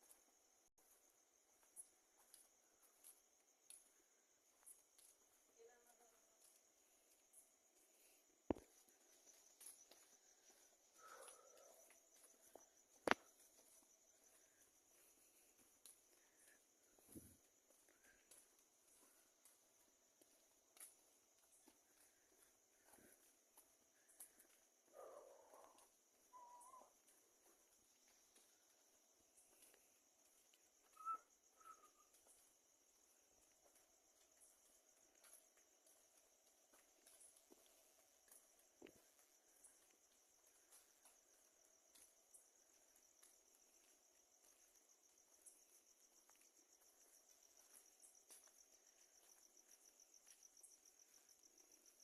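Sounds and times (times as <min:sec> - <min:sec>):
crickets chirping: 0:00.0 - 0:52.0
short whistle-like calls: 0:30.9 - 0:32.1.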